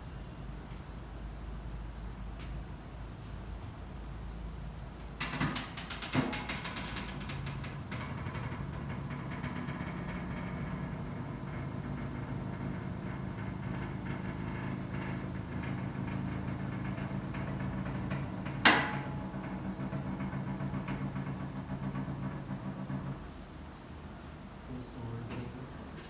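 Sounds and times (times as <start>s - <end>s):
low mechanical hum: 0.0s - 26.0s.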